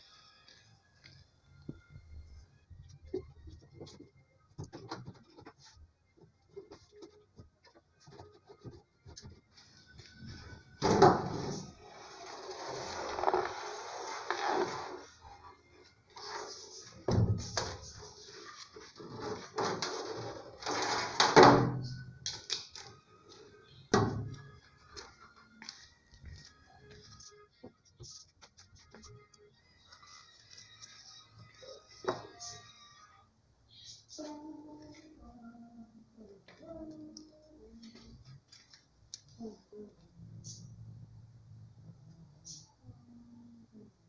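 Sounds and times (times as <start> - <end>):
scraping and rustling: 11.2 - 15.2, 16.1 - 21.4.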